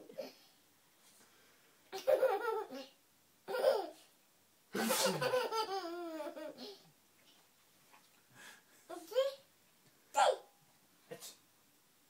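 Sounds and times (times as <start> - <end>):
baby laughing: 1.9 - 4.0, 4.8 - 6.8
adult fake sneezes: 4.8 - 5.2, 11.1 - 11.4.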